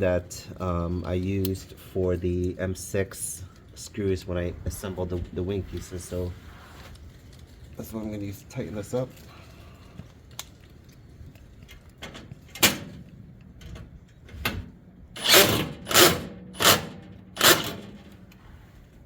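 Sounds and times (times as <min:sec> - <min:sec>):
hand tool scraping on bolt: 0:15.2 - 0:18.1.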